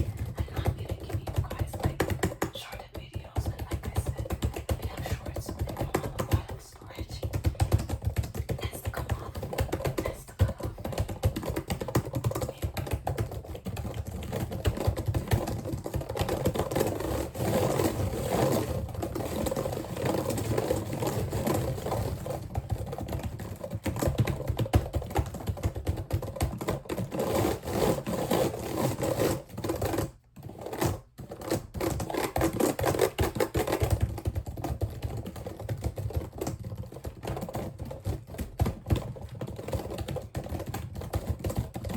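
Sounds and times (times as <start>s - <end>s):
rapid clicking and tapping: 0.0s - 41.9s.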